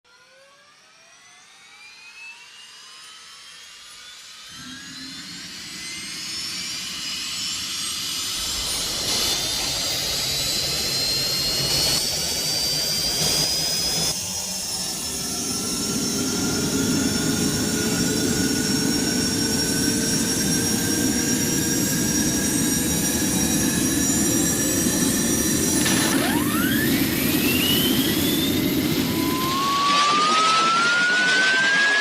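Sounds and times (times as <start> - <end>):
rising rocket whine: 4.0 - 32.0
low rocket rumble: 8.3 - 12.1.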